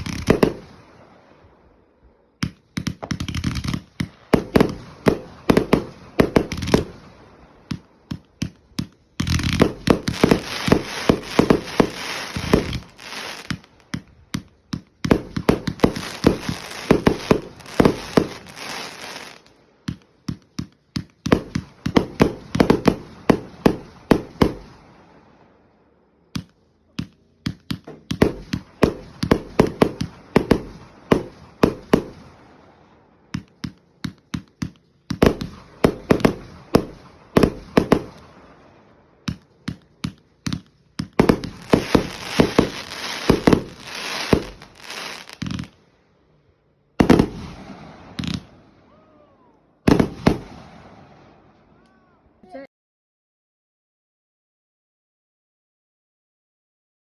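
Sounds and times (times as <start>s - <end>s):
fireworks popping and banging: 0.0s - 0.8s, 2.4s - 24.8s, 26.4s - 32.5s, 33.3s - 38.5s, 39.2s - 45.8s, 47.0s - 48.6s, 49.9s - 51.0s
hissing rush: 9.2s - 13.8s, 15.4s - 19.5s, 41.3s - 45.4s.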